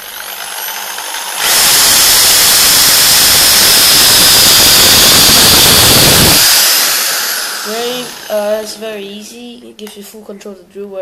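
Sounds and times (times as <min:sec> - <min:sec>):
hammer drill whining: 0:00.0 - 0:08.7.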